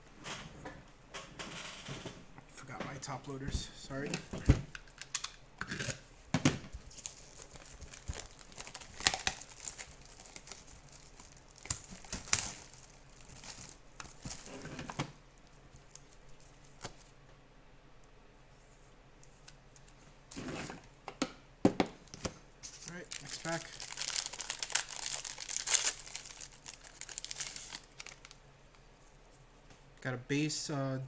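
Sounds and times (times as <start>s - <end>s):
plastic packaging crinkling and tearing: 6.9s - 17.1s, 22.6s - 28.4s.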